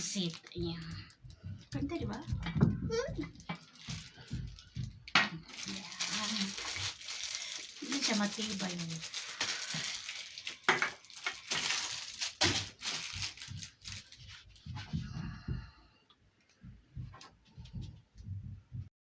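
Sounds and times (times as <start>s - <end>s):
packaging crinkling and tearing: 0.0s - 0.9s, 3.3s - 14.7s
dull knocks and bumps: 1.2s - 5.4s, 13.1s - 15.8s, 16.6s - 18.9s.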